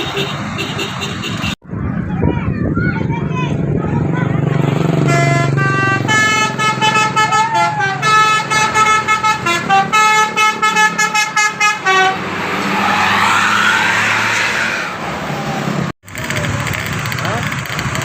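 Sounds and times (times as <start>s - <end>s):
multi-tone bus horn tune: 4.8s - 12.4s.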